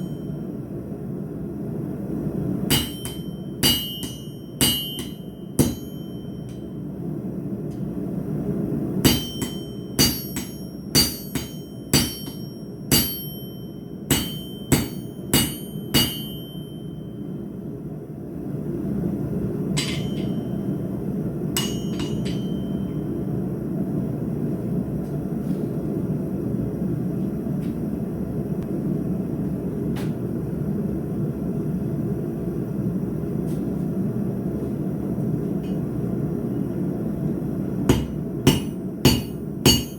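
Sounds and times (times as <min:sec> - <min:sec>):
hammer striking steel on anvil: 0:00.0 - 0:00.3, 0:02.7 - 0:06.8, 0:09.0 - 0:17.2, 0:19.7 - 0:20.8, 0:21.5 - 0:23.1, 0:37.9 - 0:39.9
metal clanks: 0:19.8 - 0:20.5, 0:21.6 - 0:22.8.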